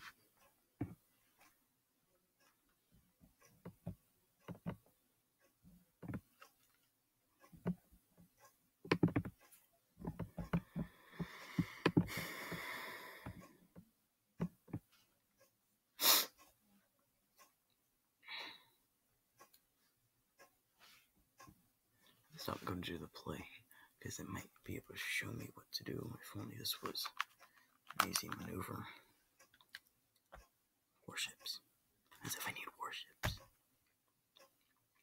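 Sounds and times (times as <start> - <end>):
puzzle cube plastic clicks: 27.0 - 28.5.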